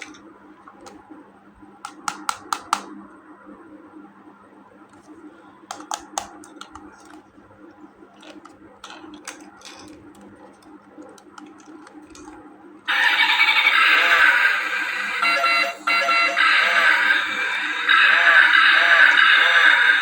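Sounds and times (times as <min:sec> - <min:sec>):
plastic toy pieces clicking: 0:08.2 - 0:12.4
electronic toy sound effect: 0:12.9 - 0:20.0.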